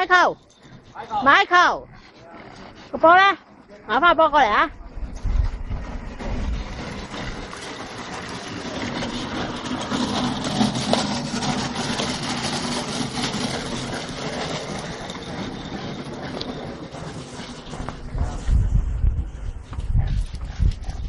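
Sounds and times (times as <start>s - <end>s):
low hum: 0.0s - 21.0s
rushing rumbling noise: 1.8s - 21.0s.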